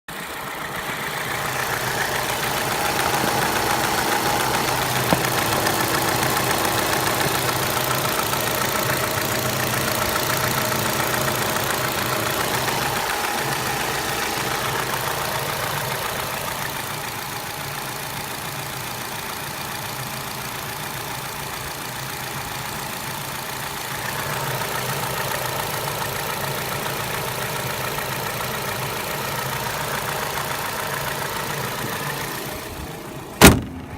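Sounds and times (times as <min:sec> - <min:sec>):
car engine idling: 0:00.1 - 0:33.9
gear knocking: 0:01.5 - 0:14.7.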